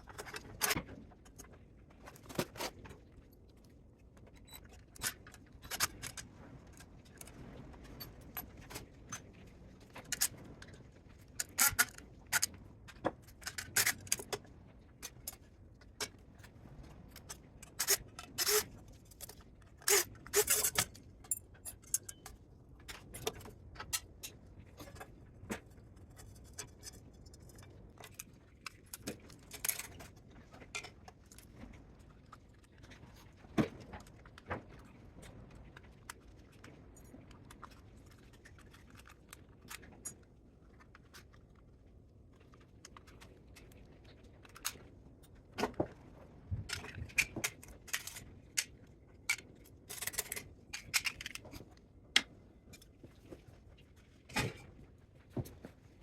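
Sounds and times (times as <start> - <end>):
metal parts clinking and scraping: 17.7 - 22.3, 26.3 - 30.0, 46.7 - 48.7, 49.3 - 51.6.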